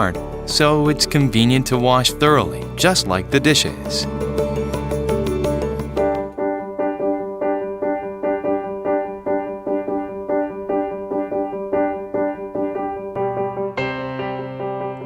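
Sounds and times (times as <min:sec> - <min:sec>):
low bass note: 0:00.0 - 0:06.4
piano repeated notes: 0:00.0 - 0:15.0.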